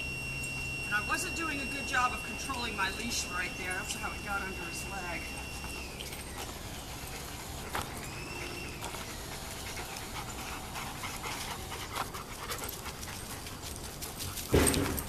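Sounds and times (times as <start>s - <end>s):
dog panting: 6.8s - 14.6s
loud thump: 14.5s - 15.0s.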